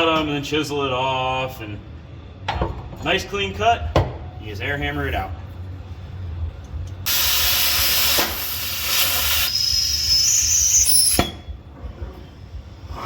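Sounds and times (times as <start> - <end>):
cutting torch hissing: 7.1 - 11.2
high rising whistle: 9.0 - 11.4.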